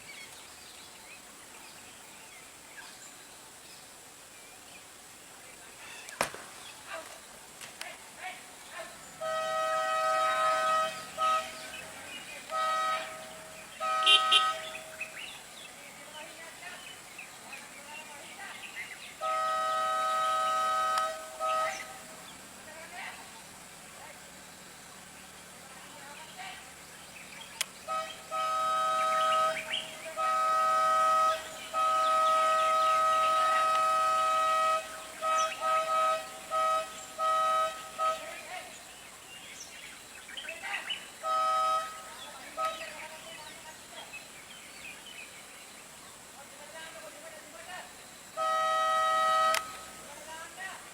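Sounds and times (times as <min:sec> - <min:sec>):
sharp loud bangs: 0:06.2 - 0:06.6
vehicle horn honking: 0:09.2 - 0:15.2, 0:19.2 - 0:22.2, 0:27.8 - 0:38.7, 0:41.2 - 0:43.3, 0:48.4 - 0:50.2.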